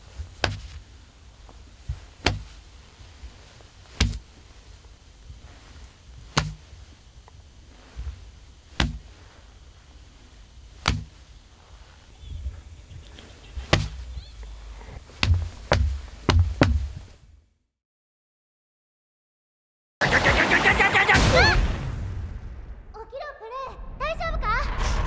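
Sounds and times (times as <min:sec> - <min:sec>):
sharp smacks on muscles: 0:00.2 - 0:00.9, 0:01.9 - 0:02.6, 0:03.9 - 0:06.8, 0:07.9 - 0:09.4, 0:10.2 - 0:11.9, 0:13.0 - 0:17.1.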